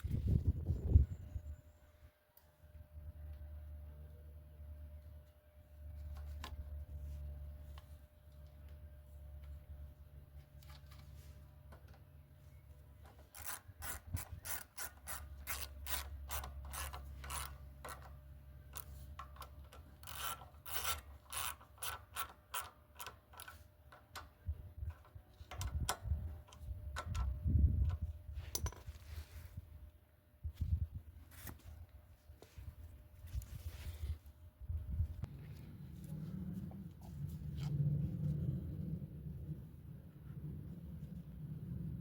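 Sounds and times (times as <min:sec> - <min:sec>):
hand tool clicking and rasping: 0:13.0 - 0:24.3.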